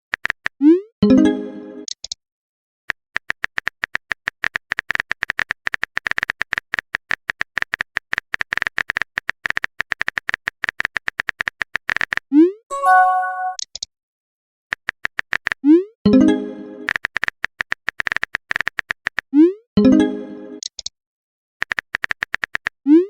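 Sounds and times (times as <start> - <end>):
electronic message chime: 12.7 - 13.6.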